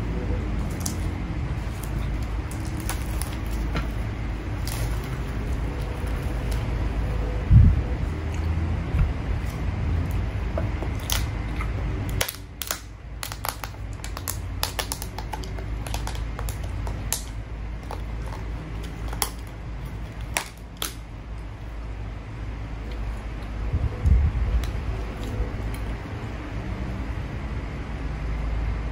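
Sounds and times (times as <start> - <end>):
low steady rumble: 0.0 - 28.9
utensils and mouth clicking: 10.9 - 21.5.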